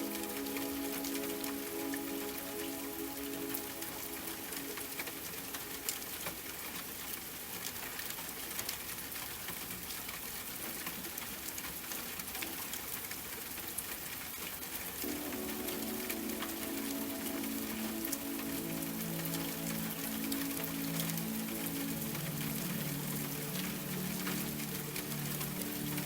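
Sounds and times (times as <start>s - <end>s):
soft sustained music chord: 0.0s - 6.6s, 15.0s - 26.0s
rain hiss: 0.0s - 26.0s
raindrop ticks: 0.0s - 26.0s.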